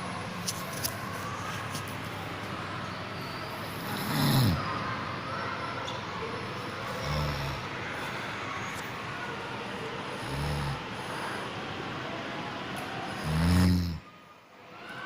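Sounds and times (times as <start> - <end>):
person snoring: 3.8 - 4.6, 6.9 - 7.7, 10.1 - 11.2, 13.1 - 14.0.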